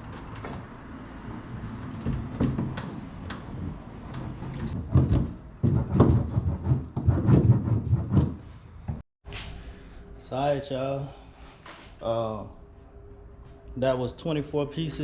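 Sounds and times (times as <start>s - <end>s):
knocks and rubbing on sheet metal: 1.6s - 9.0s.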